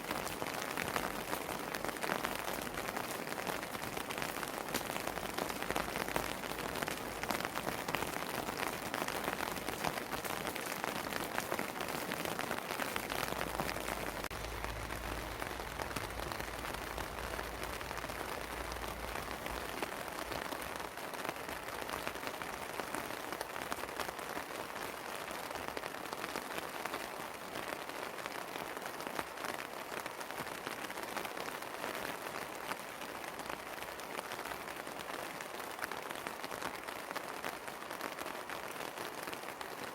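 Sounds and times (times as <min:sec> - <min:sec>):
steady rain hiss: 0:00.0 - 0:39.9
low rumble: 0:14.0 - 0:19.7.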